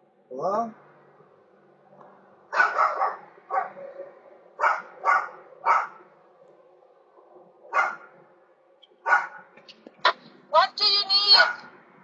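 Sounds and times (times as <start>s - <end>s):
dog barking: 2.5s - 6.1s, 7.7s - 8.2s, 9.0s - 9.6s, 11.4s - 11.8s.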